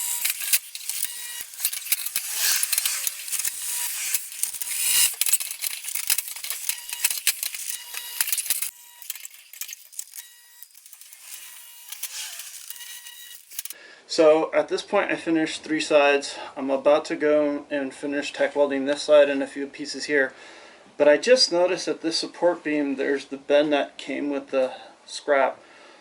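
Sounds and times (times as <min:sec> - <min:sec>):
metal sheets clinking and rattling: 0:00.0 - 0:13.7.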